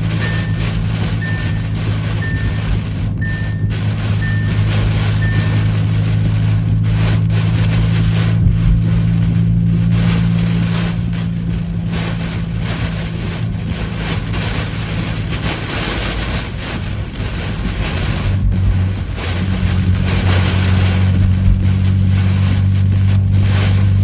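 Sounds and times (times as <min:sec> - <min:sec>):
vehicle driving drone: 0:00.0 - 0:16.2, 0:17.9 - 0:24.0
rain: 0:00.0 - 0:24.0
storm wind: 0:00.0 - 0:24.0.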